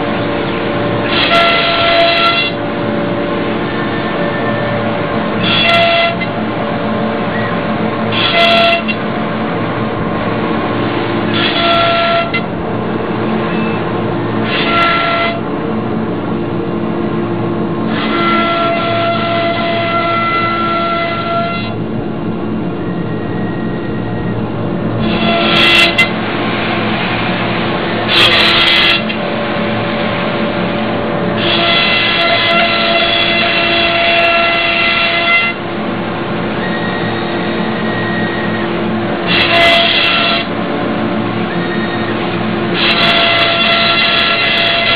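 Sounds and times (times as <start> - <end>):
cnc router running: 0.0 - 44.9
high whine: 0.0 - 44.9
dust collector: 24.9 - 44.9.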